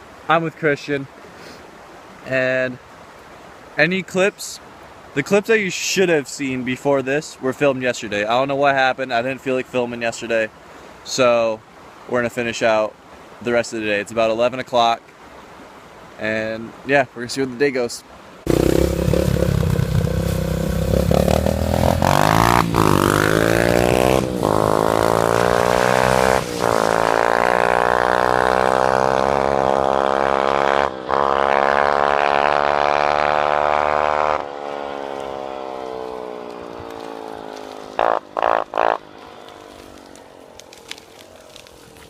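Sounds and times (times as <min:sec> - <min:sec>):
engine revving bursts: 0:18.5 - 0:39.0
dirt bike engine accelerating: 0:18.5 - 0:39.9.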